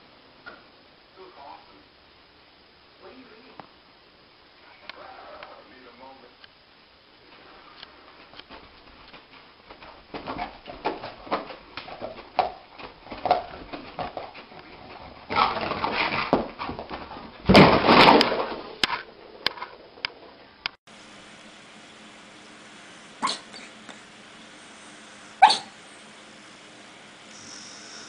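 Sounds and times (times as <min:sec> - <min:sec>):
dog whimpering: 0:23.2 - 0:23.8.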